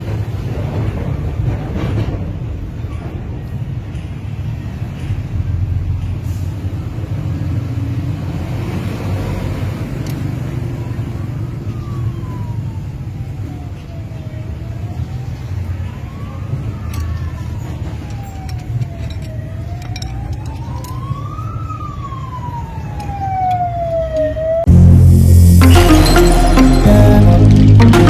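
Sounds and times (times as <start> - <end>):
road traffic rumble: 0.0 - 25.6
siren wailing: 11.0 - 28.0.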